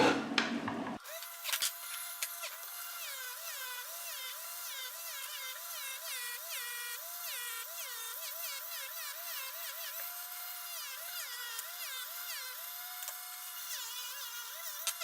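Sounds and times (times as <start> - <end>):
rotary tool whining: 1.0 - 15.0.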